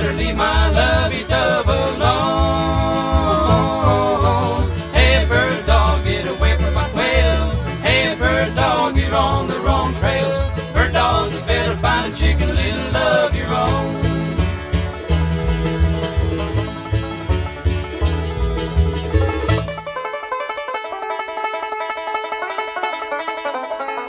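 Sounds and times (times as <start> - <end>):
banjo: 0.0 - 24.0
bluegrass band instrumental: 0.0 - 24.0.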